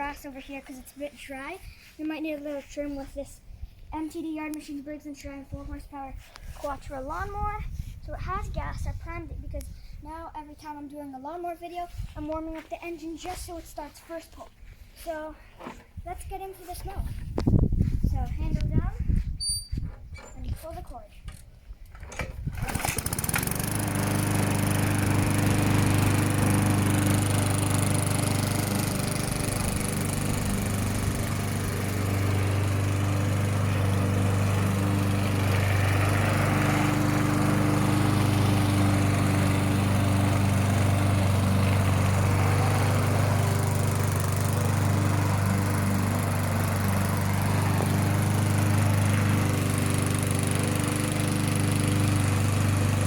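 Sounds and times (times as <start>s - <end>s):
lawn mower engine running: 21.9s - 53.0s.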